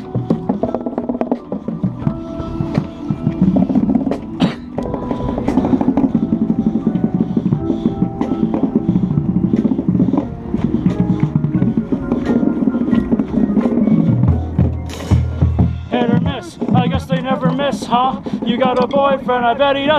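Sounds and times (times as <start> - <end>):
fast tenor drum strokes: 8.6 - 18.6
percussion ensemble performing: 13.6 - 16.4.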